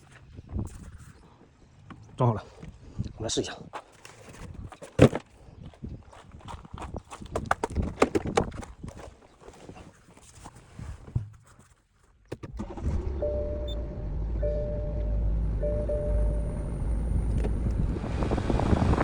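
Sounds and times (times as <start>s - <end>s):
short repeating tone: 13.2s - 17.2s
heater blower rushing air: 15.4s - 19.0s.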